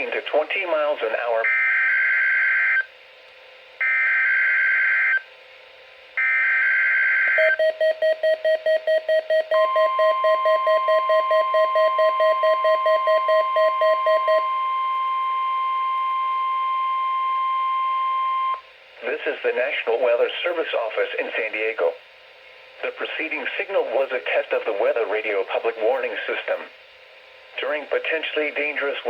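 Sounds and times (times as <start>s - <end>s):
pulsing alarm beep: 6.2s - 15.6s.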